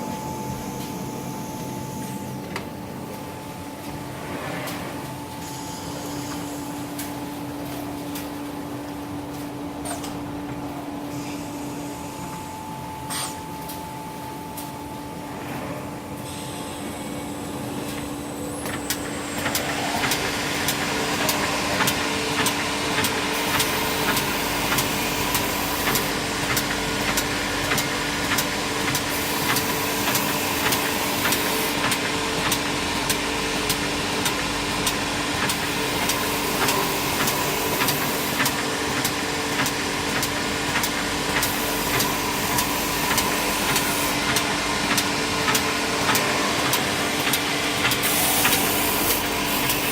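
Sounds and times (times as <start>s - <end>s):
machine cutting with regular clicks: 18.7s - 49.9s.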